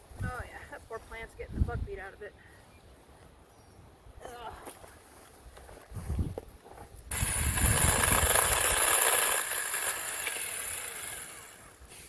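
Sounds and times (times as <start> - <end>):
chainsaw cutting wood: 7.1 - 12.0.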